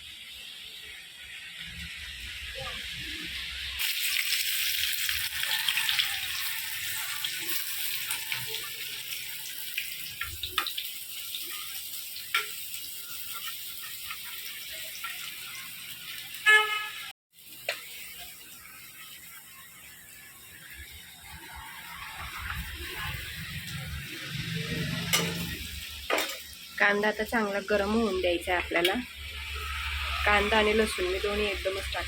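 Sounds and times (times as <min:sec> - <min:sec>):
onion and garlic sizzling in oil: 0:00.0 - 0:32.0
horn honk: 0:16.4 - 0:17.1.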